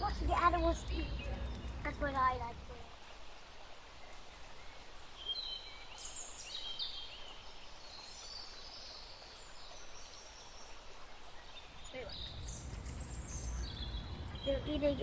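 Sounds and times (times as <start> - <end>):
small birds chirping: 0.0 - 3.2, 4.0 - 15.0
outdoor background hiss: 0.0 - 15.0.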